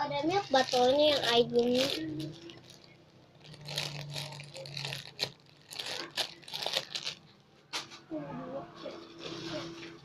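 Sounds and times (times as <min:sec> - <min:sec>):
plastic packaging crinkling: 0:00.2 - 0:07.5.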